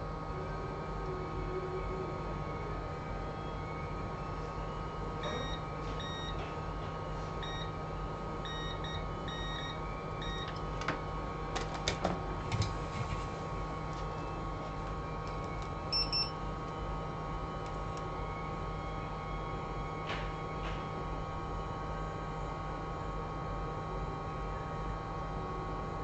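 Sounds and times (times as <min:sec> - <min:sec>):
electronic equipment hum: 0:00.0 - 0:26.0
short electronic beeps: 0:05.2 - 0:06.4, 0:07.4 - 0:07.7, 0:08.4 - 0:10.5.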